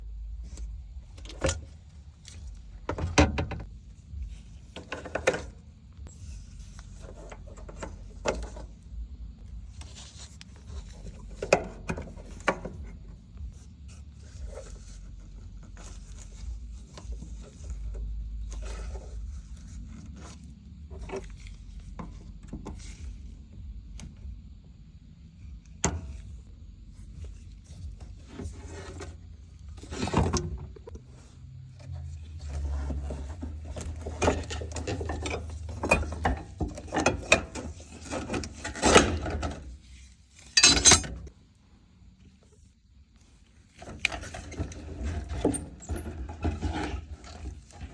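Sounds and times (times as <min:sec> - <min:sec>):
low steady rumble: 0:00.0 - 0:47.9
tools and parts clicking and rattling: 0:32.4 - 0:39.8, 0:40.4 - 0:41.4.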